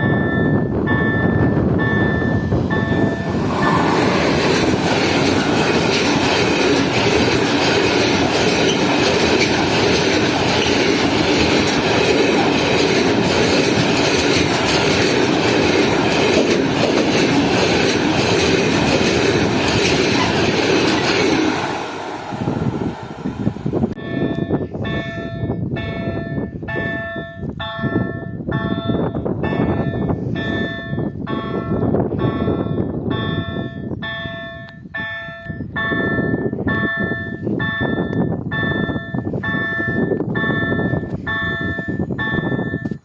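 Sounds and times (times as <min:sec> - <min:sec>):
freight train rolling past: 0:00.0 - 0:43.0
wheels clacking over rail joints: 0:02.6 - 0:24.0.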